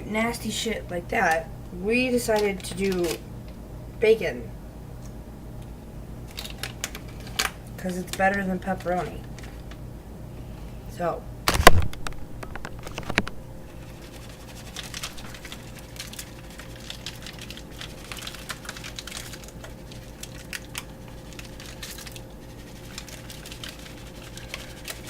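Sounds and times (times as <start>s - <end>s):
faint steady hum: 0.0s - 25.0s
packaging crinkling: 6.3s - 9.8s, 11.5s - 25.0s.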